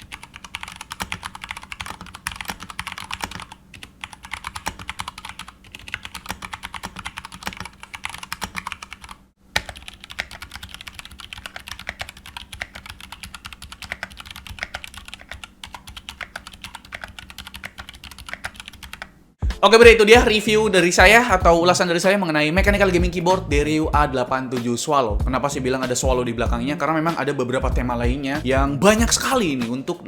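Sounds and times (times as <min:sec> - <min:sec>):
mechanical keyboard typing: 0:00.0 - 0:19.1.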